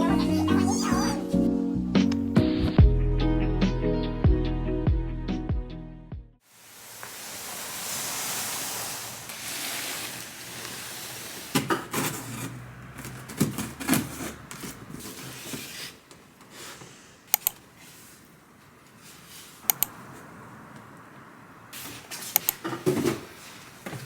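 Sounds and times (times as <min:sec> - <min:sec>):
hiss: 0:06.4 - 0:11.6
packaging rustling and scraping: 0:07.2 - 0:16.8
sharp clicks: 0:17.3 - 0:17.6, 0:19.7 - 0:20.0, 0:22.3 - 0:22.6.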